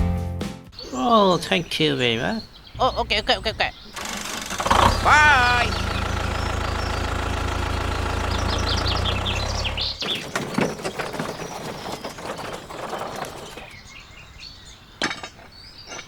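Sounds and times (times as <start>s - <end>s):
birds chirping: 0.7s - 16.0s
small motor running: 3.9s - 10.0s.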